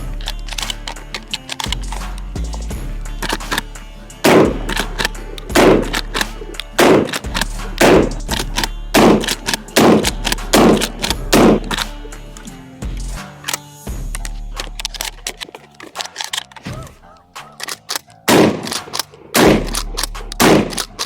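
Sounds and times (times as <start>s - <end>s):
background music: 0.0s - 21.0s
shotgun shots: 4.2s - 12.0s, 16.6s - 21.0s.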